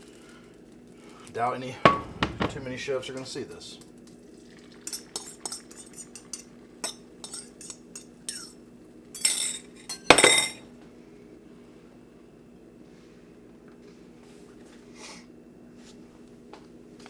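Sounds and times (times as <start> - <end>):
whisk clinking against bowl: 4.9 - 8.6.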